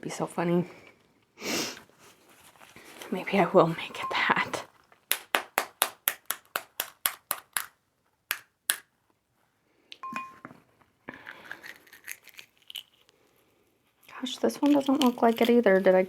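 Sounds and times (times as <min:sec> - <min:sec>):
faint rustling: 0:01.8 - 0:04.9
short electronic beep: 0:03.9 - 0:04.5, 0:10.0 - 0:10.5.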